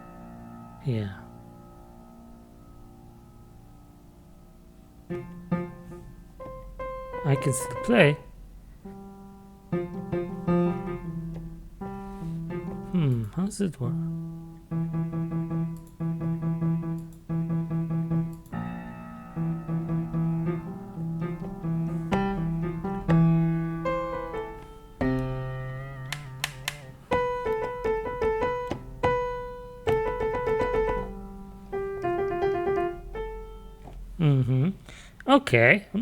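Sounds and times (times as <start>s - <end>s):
piano chords and melody notes: 0.0s - 34.5s.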